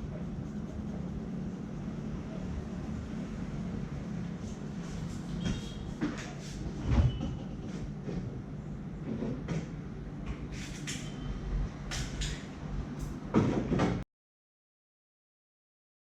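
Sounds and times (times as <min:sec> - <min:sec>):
hands rubbing on head and hair: 0:04.3 - 0:06.6.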